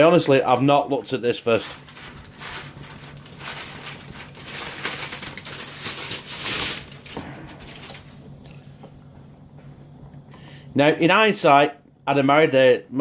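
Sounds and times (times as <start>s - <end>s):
low steady hum: 0.0s - 13.0s
tin foil crinkling: 0.1s - 8.2s.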